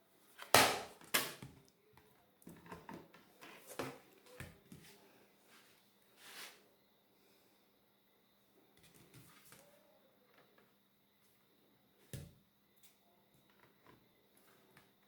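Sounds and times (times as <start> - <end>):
soft rustle: 3.6 - 6.7.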